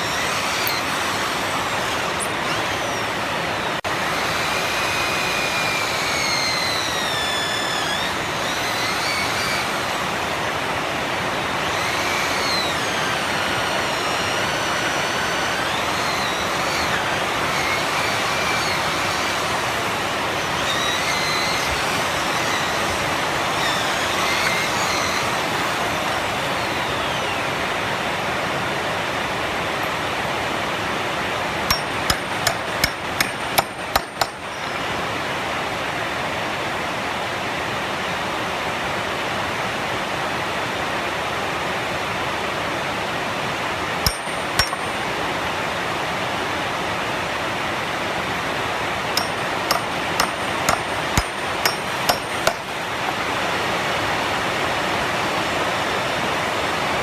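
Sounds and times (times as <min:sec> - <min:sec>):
hammer striking: 0:31.7 - 0:34.8, 0:44.1 - 0:45.0, 0:49.2 - 0:52.7.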